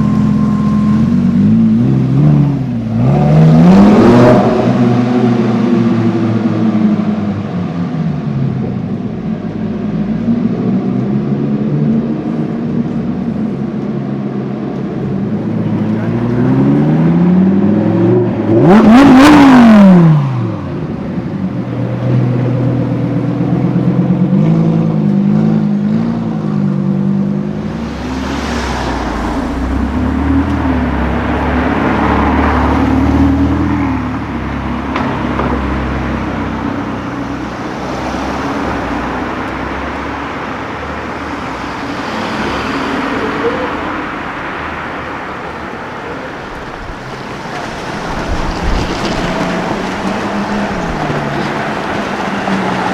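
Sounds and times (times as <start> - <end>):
street traffic: 0.0 - 52.9
sports car engine revving: 14.9 - 20.6, 27.2 - 34.1.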